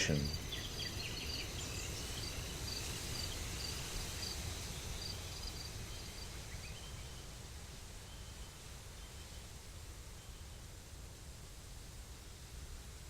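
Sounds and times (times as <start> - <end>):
crickets chirping: 0.0 - 6.5.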